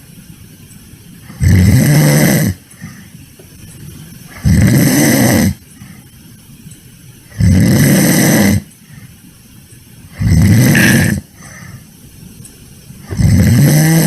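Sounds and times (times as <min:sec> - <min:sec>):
loud snoring: 0:01.3 - 0:03.0, 0:04.3 - 0:05.6, 0:07.3 - 0:08.7, 0:10.1 - 0:11.4, 0:13.0 - 0:14.0
quiet breathing: 0:02.6 - 0:04.5, 0:05.5 - 0:06.6, 0:08.6 - 0:13.2.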